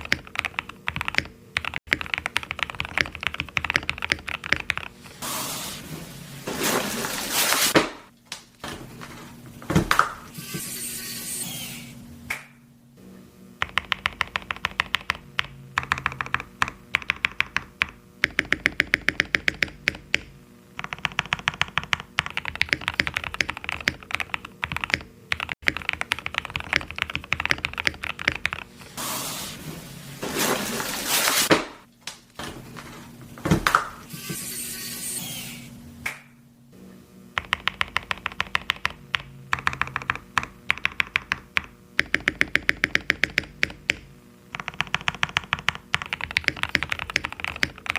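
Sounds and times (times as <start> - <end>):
typing on mechanical keyboard: 0.0 - 4.9, 13.6 - 20.2, 20.8 - 28.7, 37.4 - 44.0, 44.6 - 47.9.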